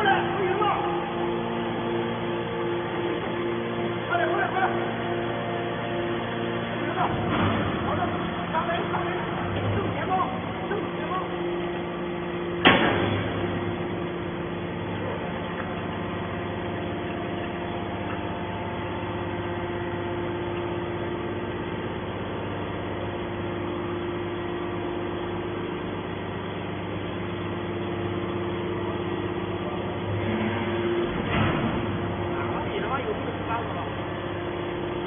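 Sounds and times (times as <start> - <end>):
hydraulic baler humming: 0.0 - 35.0.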